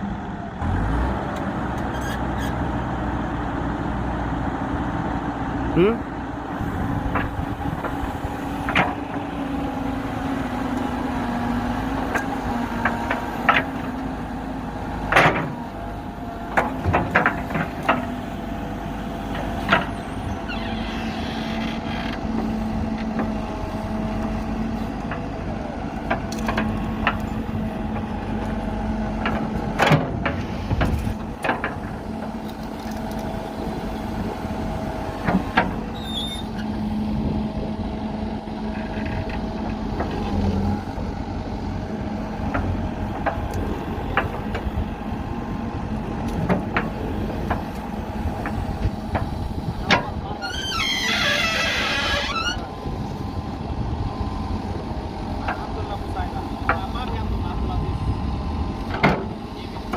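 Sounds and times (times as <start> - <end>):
diesel engine running: 0.0 - 59.9
machine knocks and clanks: 8.6 - 9.3, 15.1 - 15.6, 16.5 - 18.2.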